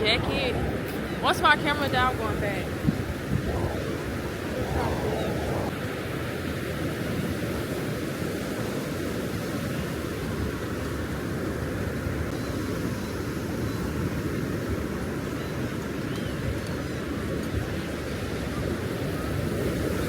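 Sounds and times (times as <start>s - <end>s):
wind rumbling on microphone: 0.0s - 8.7s
ocean surf: 0.0s - 13.0s.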